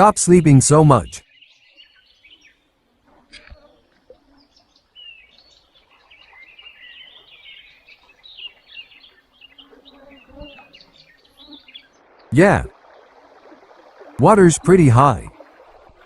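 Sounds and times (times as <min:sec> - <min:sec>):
small birds chirping and warbling: 0:00.4 - 0:12.3.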